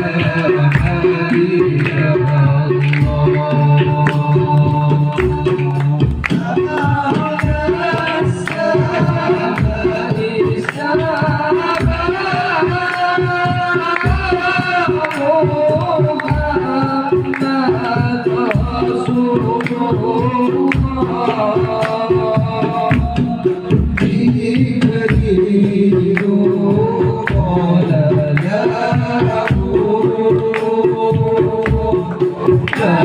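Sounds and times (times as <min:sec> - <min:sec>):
devotional singing: 0:00.0 - 0:33.0
hand-drum percussion: 0:00.0 - 0:33.0.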